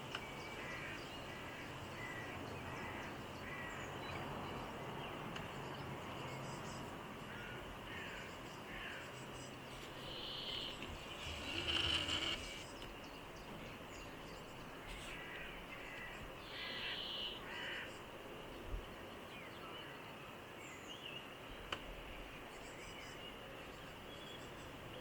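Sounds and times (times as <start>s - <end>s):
faint outdoor background: 0.0s - 25.0s
harsh bird calls: 9.6s - 12.9s.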